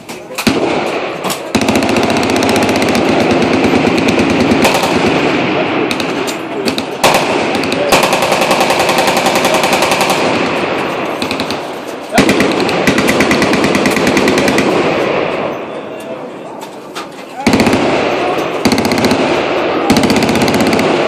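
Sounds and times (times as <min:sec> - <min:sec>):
machine guns firing automatic bursts: 0:00.4 - 0:15.5, 0:17.4 - 0:21.0.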